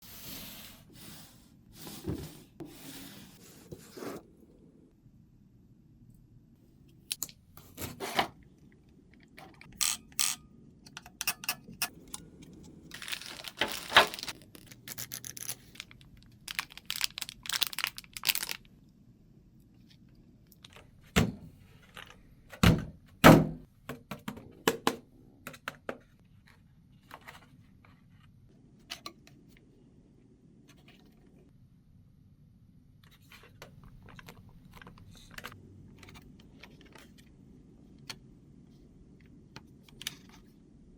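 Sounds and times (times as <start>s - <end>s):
packaging rustling and tearing: 12.8s - 18.7s.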